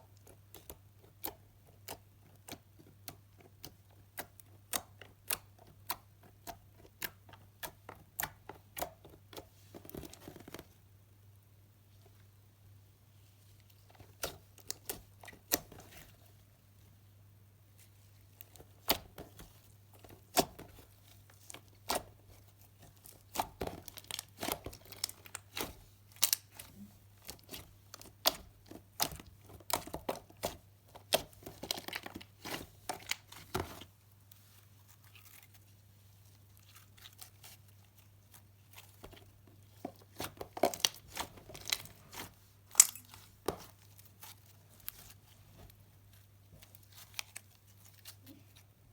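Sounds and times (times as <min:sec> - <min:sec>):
slime popping and crackling: 0:22.6 - 0:33.8.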